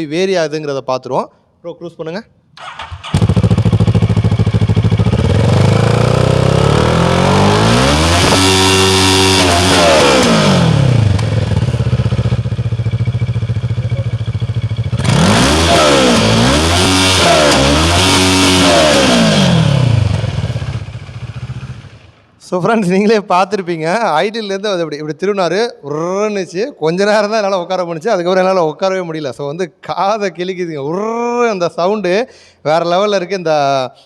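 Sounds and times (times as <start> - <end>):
motorcycle engine revving: 2.6 - 22.3.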